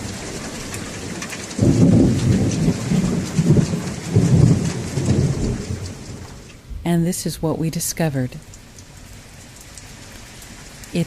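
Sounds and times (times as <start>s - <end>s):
thunder rumbling: 0.0s - 7.6s
steady rain hissing: 0.0s - 11.0s.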